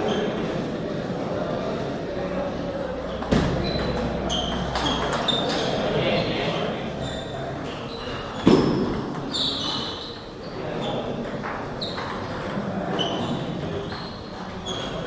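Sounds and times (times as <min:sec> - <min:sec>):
ping pong balls clicking: 0:09.1 - 0:14.0.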